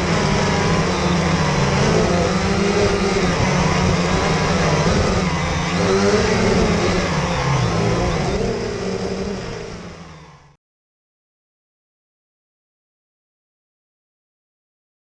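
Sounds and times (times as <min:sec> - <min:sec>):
drone propellers whirring: 0:00.0 - 0:10.6.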